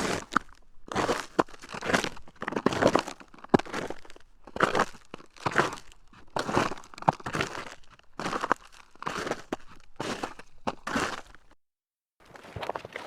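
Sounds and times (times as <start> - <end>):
footsteps crunching snow: 0.0 - 11.6.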